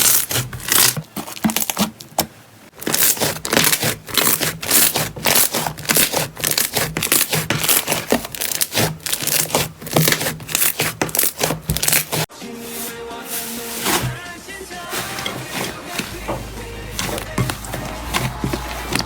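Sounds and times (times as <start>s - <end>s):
slime crackling and popping: 0.0s - 1.9s, 2.8s - 12.3s
music: 12.3s - 19.0s.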